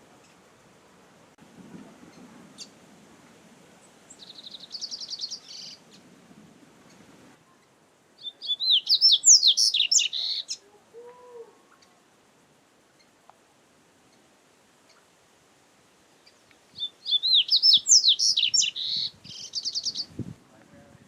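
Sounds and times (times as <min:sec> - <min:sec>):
bird singing trills: 0:04.1 - 0:06.0, 0:08.2 - 0:10.6, 0:16.2 - 0:20.2.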